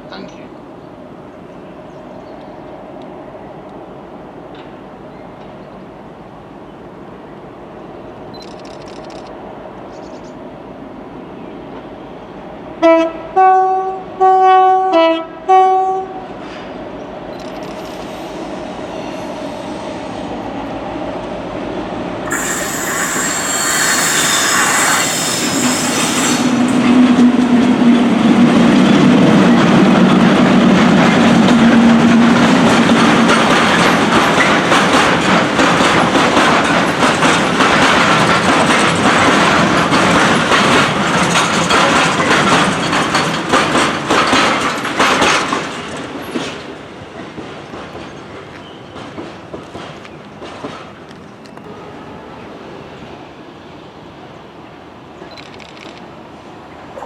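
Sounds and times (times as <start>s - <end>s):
train rumble and wheel clatter: 0.0s - 57.0s
short train horn blasts: 12.8s - 16.3s, 22.3s - 26.6s, 51.6s - 52.4s
high hissing squeal: 22.3s - 26.8s.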